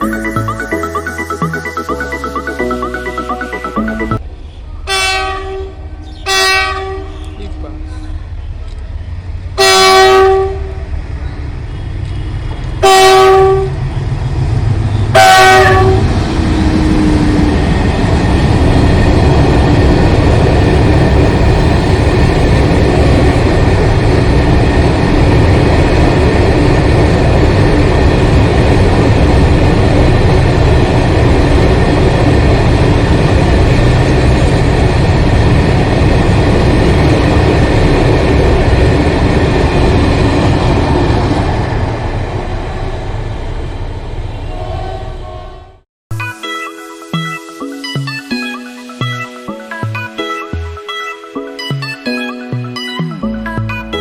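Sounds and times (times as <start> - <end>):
locomotive horn blasts: 4.9 - 7.4, 9.6 - 10.8, 12.8 - 13.8, 15.1 - 16.2, 44.4 - 45.8.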